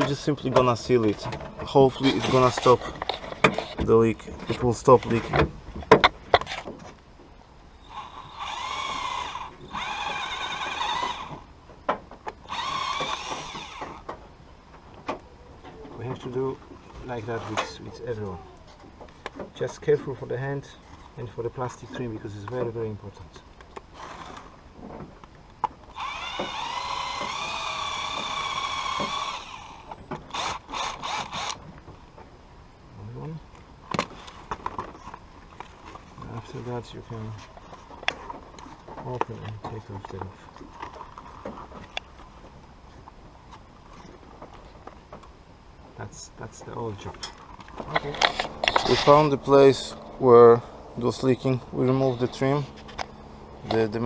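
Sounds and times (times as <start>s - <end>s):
cordless power drill whining: 7.8s - 11.5s, 12.4s - 14.1s, 23.9s - 24.6s, 25.9s - 31.7s.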